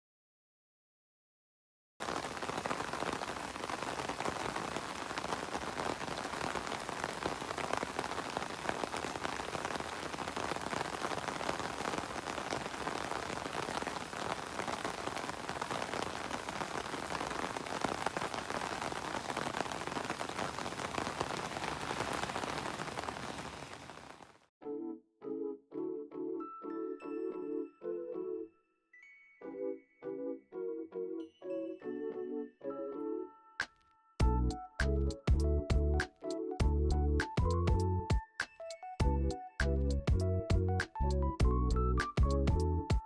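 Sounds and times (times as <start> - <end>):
heavy rain falling: 2.0 - 24.4.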